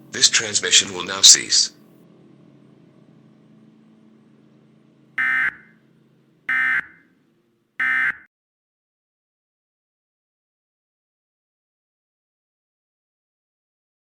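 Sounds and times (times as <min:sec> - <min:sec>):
faint steady hum: 0:00.0 - 0:08.0
buzzing data tone bursts: 0:05.2 - 0:05.7, 0:06.5 - 0:07.0, 0:07.8 - 0:08.3.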